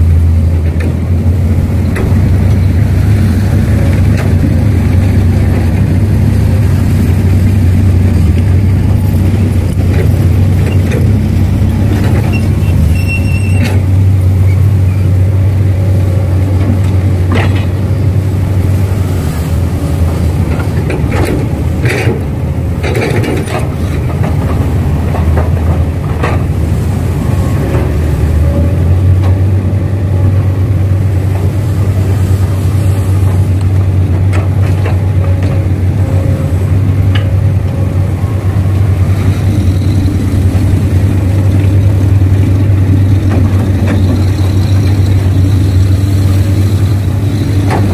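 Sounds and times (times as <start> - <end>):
diesel machinery engine hum: 0.0 - 47.9
metal squeals: 10.6 - 15.2, 35.2 - 47.9.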